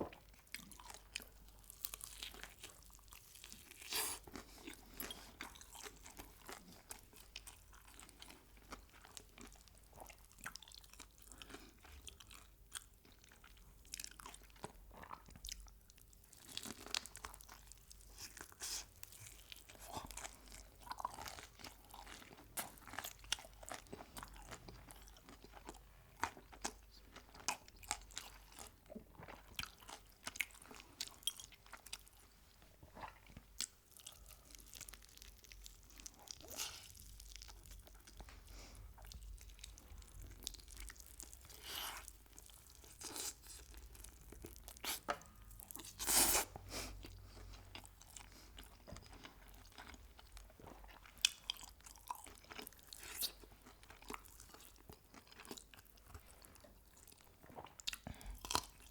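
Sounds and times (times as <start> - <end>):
crunching bites and chewing: 47.1 - 58.9.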